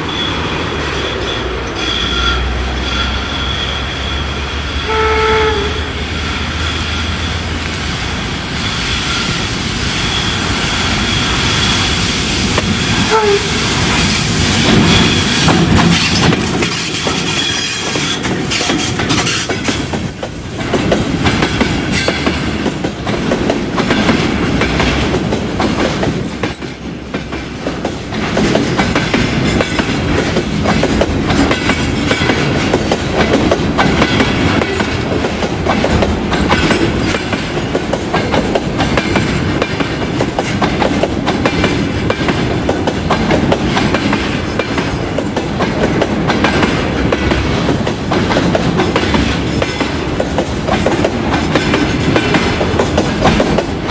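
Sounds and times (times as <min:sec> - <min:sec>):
train wheels clattering over rails: 0:05.5 - 0:53.9.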